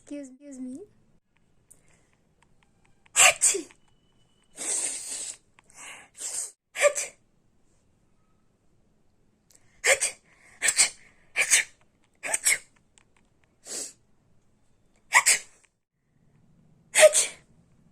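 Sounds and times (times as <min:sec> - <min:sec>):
person sneezing: 0:03.2 - 0:03.8, 0:04.6 - 0:07.2, 0:09.8 - 0:12.7, 0:15.1 - 0:15.6, 0:17.0 - 0:17.4.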